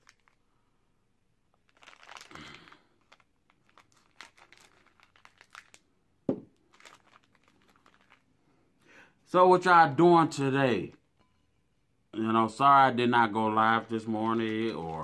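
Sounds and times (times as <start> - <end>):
wrapper tearing and crinkling: 0.0 - 0.4, 1.5 - 5.9, 6.6 - 8.3, 14.0 - 15.0.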